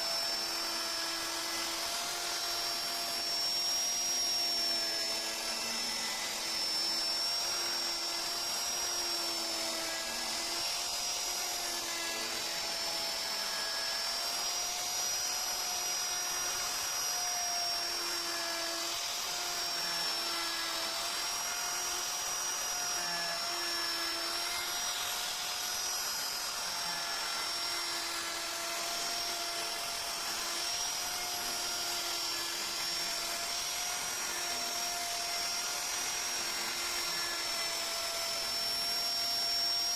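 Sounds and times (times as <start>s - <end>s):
rotary tool high whine: 0.0s - 39.9s.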